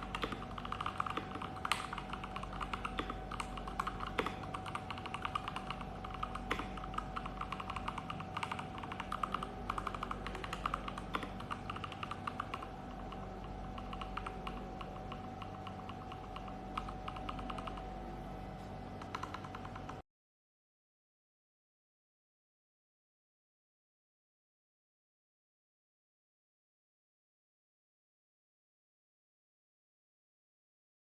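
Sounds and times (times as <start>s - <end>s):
mechanical keyboard typing: 0.0s - 18.0s, 18.9s - 20.0s.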